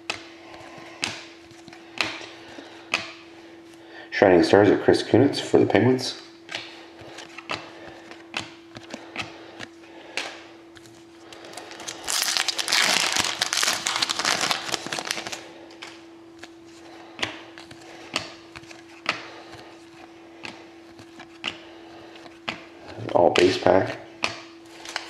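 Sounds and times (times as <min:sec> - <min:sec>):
faint steady hum: 0:00.0 - 0:25.0
foil wrapper tearing and crinkling: 0:11.5 - 0:15.5.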